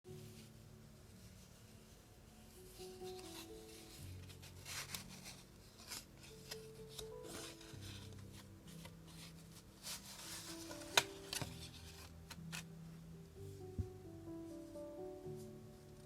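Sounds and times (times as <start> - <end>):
soft background music: 0.1 - 16.0
paper rustling: 1.1 - 12.7.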